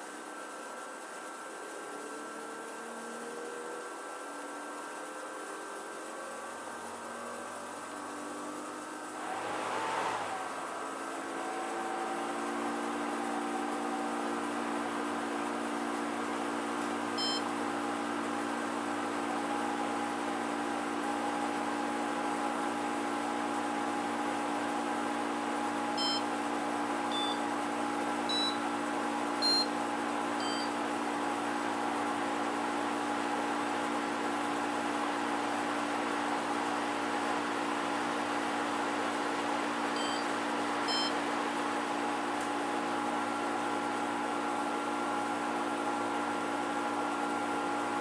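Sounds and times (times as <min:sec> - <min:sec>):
short electronic beeps: 0:17.2 - 0:17.5, 0:26.0 - 0:26.2, 0:27.1 - 0:27.5, 0:28.3 - 0:28.7, 0:29.4 - 0:29.8, 0:30.4 - 0:30.8, 0:40.0 - 0:40.3, 0:40.9 - 0:41.2
air conditioner humming: 0:24.9 - 0:31.2, 0:39.8 - 0:41.8.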